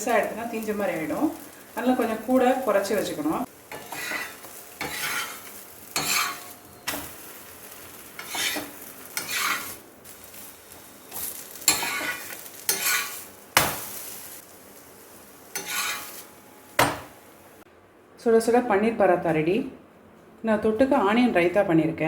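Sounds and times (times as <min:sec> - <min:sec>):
flatbread sizzling on a pan: 0:00.0 - 0:17.6
spatula tapping pan: 0:03.7 - 0:07.2, 0:11.2 - 0:14.0
metal spatula scraping: 0:03.7 - 0:14.3, 0:15.5 - 0:16.4.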